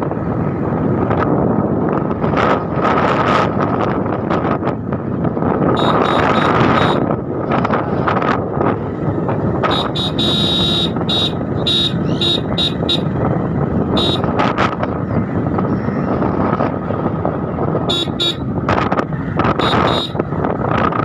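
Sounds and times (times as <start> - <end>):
vehicle traffic noise: 0.0 - 21.0
short high horn toots: 5.8 - 7.0, 9.7 - 13.1, 17.9 - 18.4, 19.6 - 20.2.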